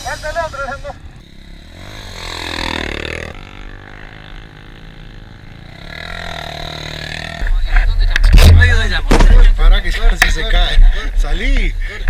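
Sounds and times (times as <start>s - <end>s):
dirt bike engine revving: 0.0s - 7.8s.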